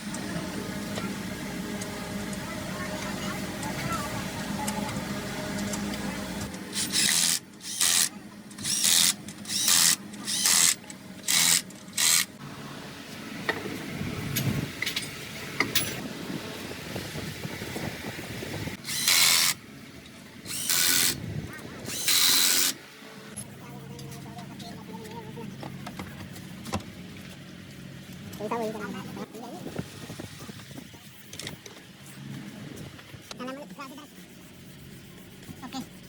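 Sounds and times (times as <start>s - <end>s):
power tool bursts: 18.8s - 19.6s, 20.5s - 21.2s.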